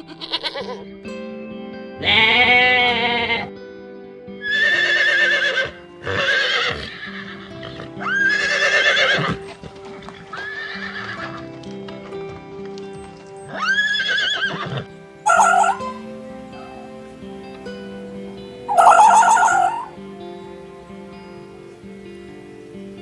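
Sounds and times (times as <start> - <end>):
soft background music: 0.0 - 23.0
horse whinnying: 4.4 - 9.4, 13.5 - 15.9, 18.7 - 19.9.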